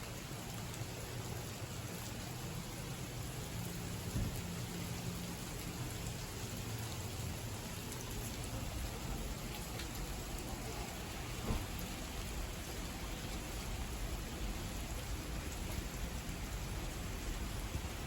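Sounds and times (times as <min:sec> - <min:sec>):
heavy rain: 0:00.0 - 0:18.0
raindrops tapping: 0:03.6 - 0:18.0.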